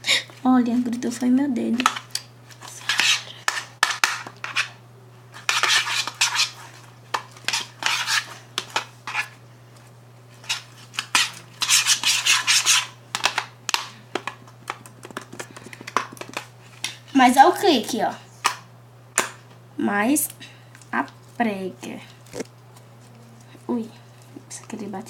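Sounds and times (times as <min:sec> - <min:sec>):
spoon scraping slime in bowl: 0:01.9 - 0:04.8, 0:05.4 - 0:09.4, 0:10.4 - 0:13.0.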